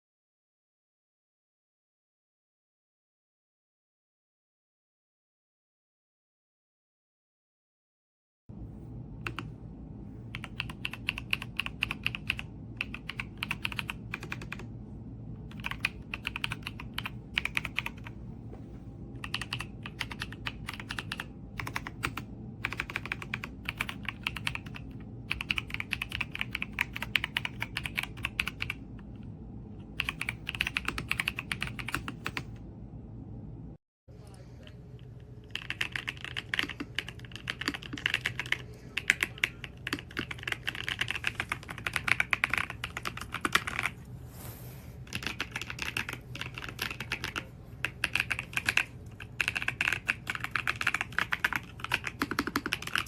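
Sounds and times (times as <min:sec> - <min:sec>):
steady low hum: 0:08.5 - 0:53.0
mechanical keyboard typing: 0:09.2 - 0:09.5, 0:10.3 - 0:14.7, 0:15.5 - 0:18.1, 0:19.2 - 0:28.8, 0:30.0 - 0:32.5, 0:35.5 - 0:44.0, 0:45.1 - 0:53.0.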